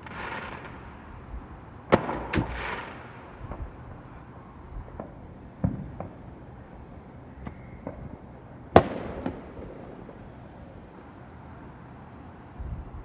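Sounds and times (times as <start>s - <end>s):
fireworks banging: 2.0s - 3.0s.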